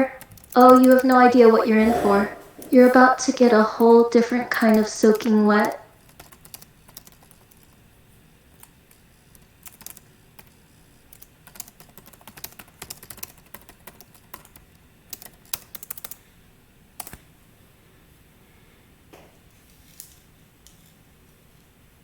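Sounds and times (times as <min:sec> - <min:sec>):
typing on computer keyboard: 0:00.1 - 0:01.1, 0:04.6 - 0:07.7, 0:08.6 - 0:08.8, 0:09.6 - 0:16.2, 0:17.0 - 0:17.2.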